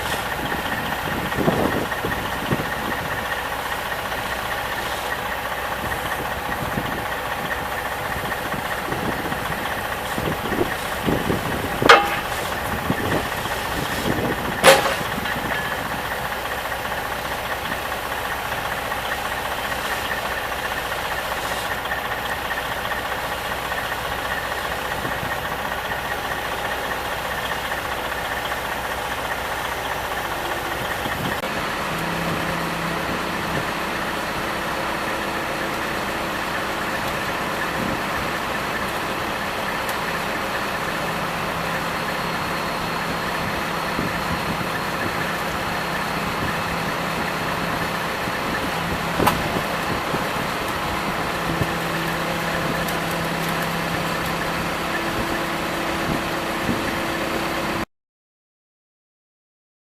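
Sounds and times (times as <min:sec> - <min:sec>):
diesel engine running: 0:00.0 - 0:57.9.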